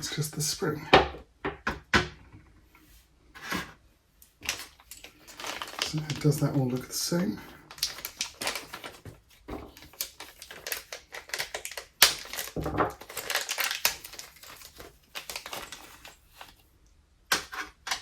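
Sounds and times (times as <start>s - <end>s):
small parts clicking and rustling: 4.2s - 16.7s.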